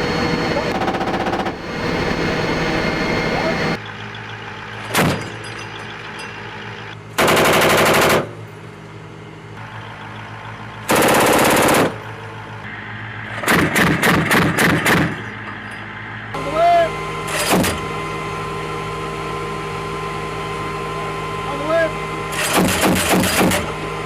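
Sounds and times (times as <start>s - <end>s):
steady low hum: 0.0s - 3.8s.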